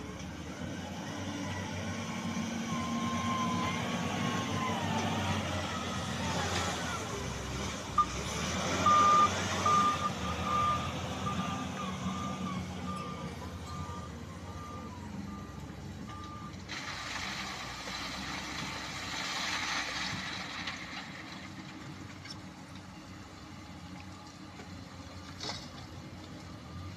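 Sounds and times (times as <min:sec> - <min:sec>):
diesel engine running: 0:00.0 - 0:26.9
reversing alarm beeping: 0:08.8 - 0:16.5.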